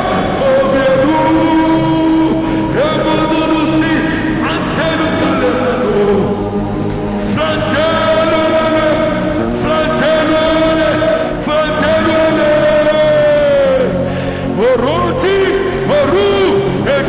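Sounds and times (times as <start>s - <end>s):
slow worship music: 0.0s - 17.0s
voice holding long notes: 0.0s - 17.0s.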